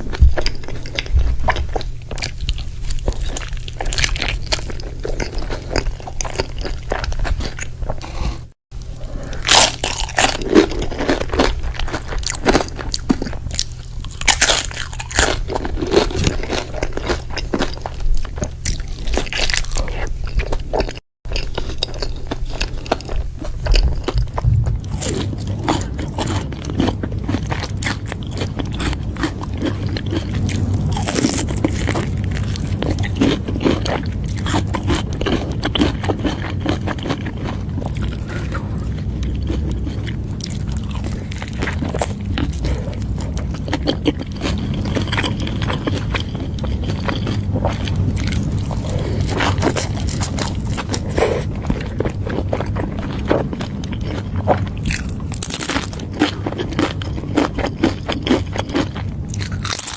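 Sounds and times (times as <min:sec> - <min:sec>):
chewing and crunching: 0:00.0 - 0:59.9
low hum: 0:21.8 - 0:59.7.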